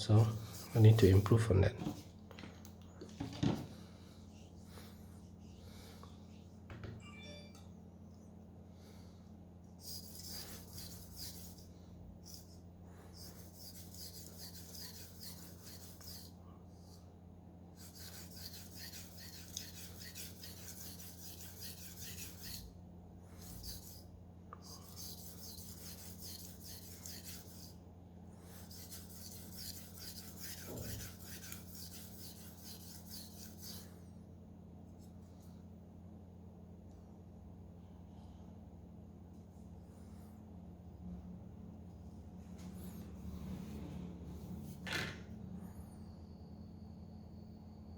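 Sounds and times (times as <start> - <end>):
faint electrical hum: 0.0 - 47.9
knife rasping on whetstone: 0.2 - 1.5, 9.8 - 16.4, 17.8 - 22.8, 23.4 - 27.8, 28.5 - 33.9.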